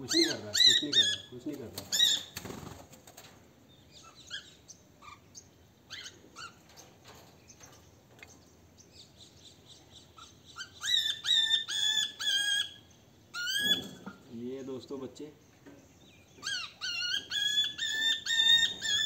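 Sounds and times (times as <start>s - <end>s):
parrots chirping: 0.0s - 1.3s, 3.8s - 6.9s, 8.2s - 14.2s, 16.2s - 19.0s.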